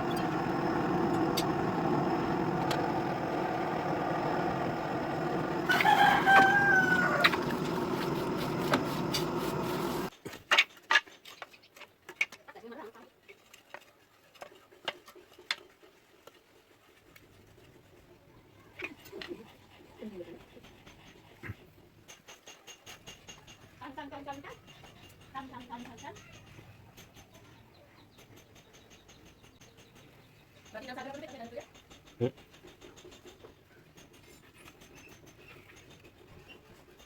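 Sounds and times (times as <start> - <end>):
power tool droning: 0.0 - 10.1
rooster crowing: 0.0 - 10.1.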